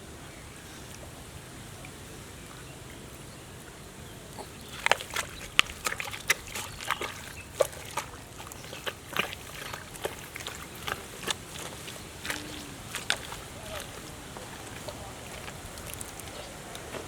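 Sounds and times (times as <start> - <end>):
hands squelching in mud: 4.2 - 17.0.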